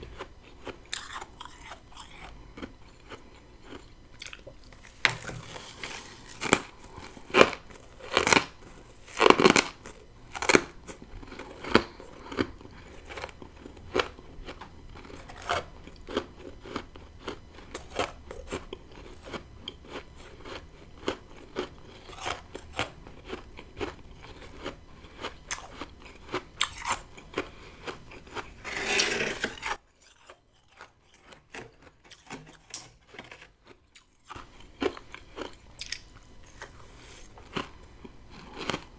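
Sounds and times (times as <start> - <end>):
chewing crunchy frost: 0.0 - 38.9.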